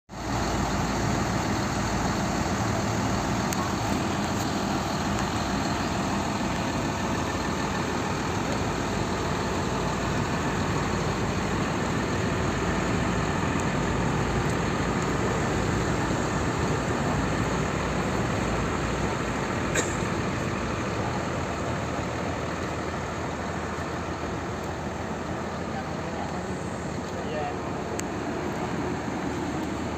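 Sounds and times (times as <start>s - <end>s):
bus diesel engine running: 0.1s - 29.9s.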